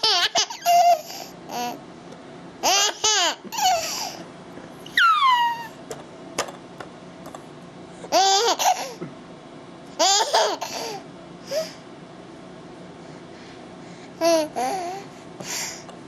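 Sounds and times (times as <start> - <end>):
child squealing and laughing: 4.9 - 5.8.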